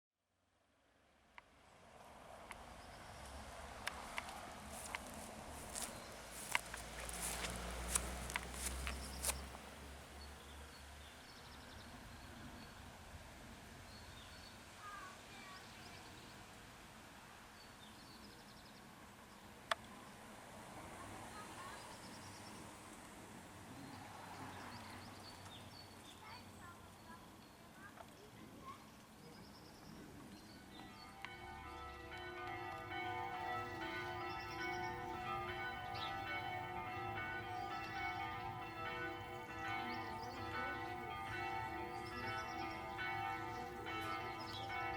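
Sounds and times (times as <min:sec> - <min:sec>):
faint outdoor background noise: 0:00.2 - 0:44.9
church bells ringing: 0:04.7 - 0:09.3, 0:30.7 - 0:44.9.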